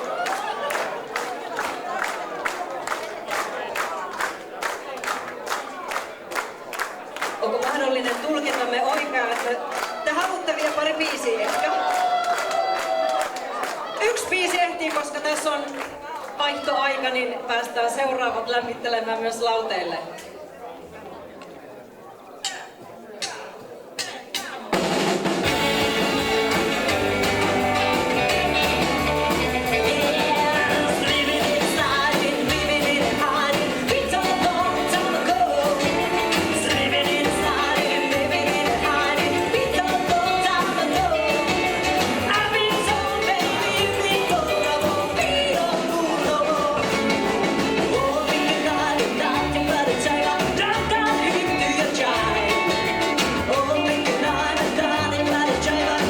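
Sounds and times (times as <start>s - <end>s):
rockabilly band playing: 24.6s - 56.0s
walking bass line: 25.2s - 56.0s
woman singing: 29.7s - 56.0s.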